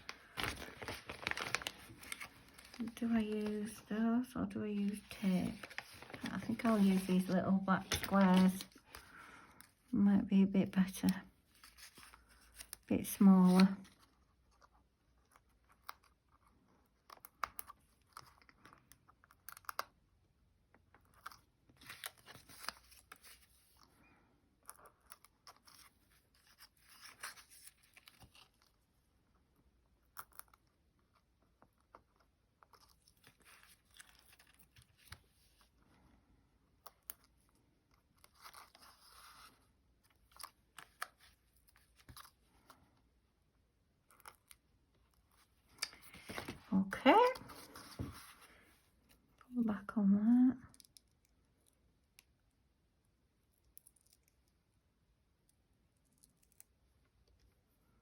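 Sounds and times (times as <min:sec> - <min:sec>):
paper rustling and peeling: 0:00.0 - 0:03.9, 0:04.8 - 0:09.1, 0:11.5 - 0:14.7, 0:21.1 - 0:23.9, 0:24.8 - 0:28.8, 0:45.2 - 0:48.7.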